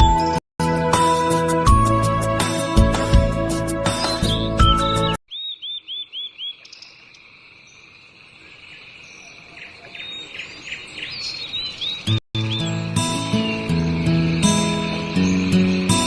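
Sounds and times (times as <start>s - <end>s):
music: 0.0s - 5.2s, 12.4s - 16.0s
small bird chirping: 4.0s - 16.0s.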